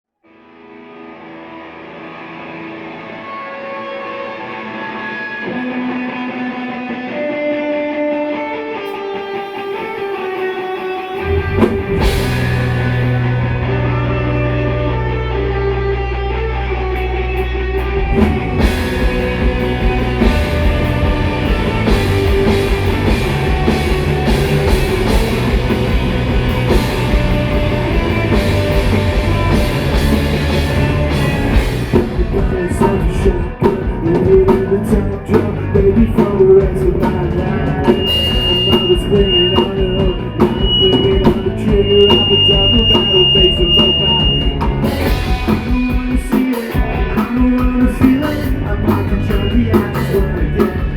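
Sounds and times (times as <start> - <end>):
electric guitar: 0.2 - 50.9
high held tone: 8.9 - 33.6, 36.5 - 50.9
drum kit: 11.1 - 14.8, 17.0 - 50.9.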